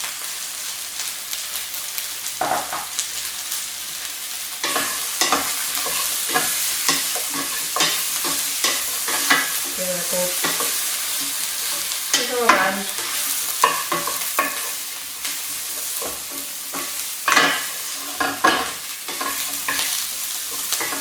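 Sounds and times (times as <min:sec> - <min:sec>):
food sizzling in a pan: 0:00.0 - 0:21.0
utensil scraping a pan: 0:04.6 - 0:21.0.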